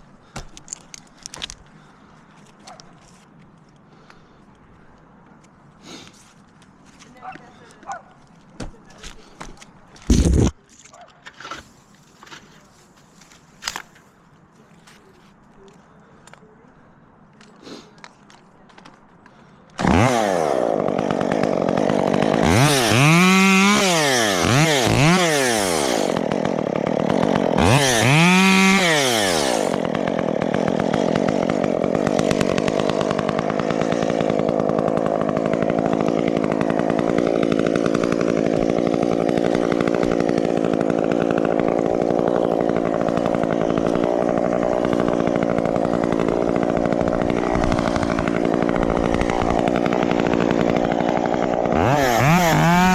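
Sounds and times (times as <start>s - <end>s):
chainsaw engine revving: 19.8s - 52.9s.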